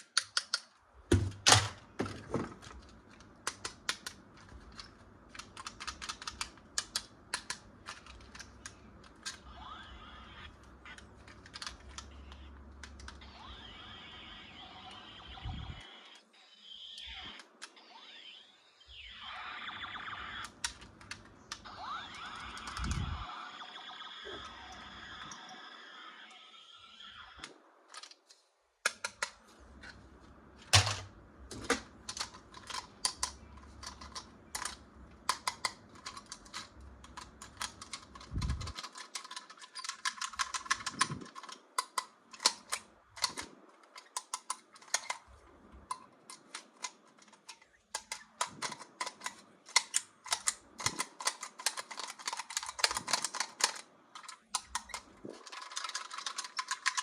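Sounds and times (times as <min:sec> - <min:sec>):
plastic toys and packaging crackling: 0:00.0 - 0:57.0.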